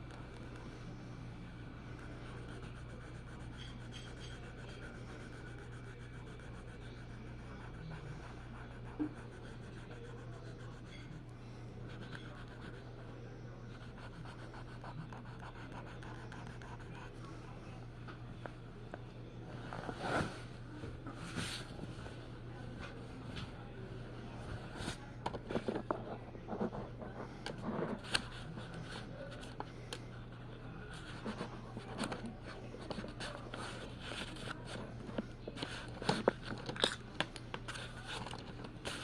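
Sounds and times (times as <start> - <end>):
steady low hum: 0.0 - 39.0
drawing tool scratching paper: 2.3 - 11.1.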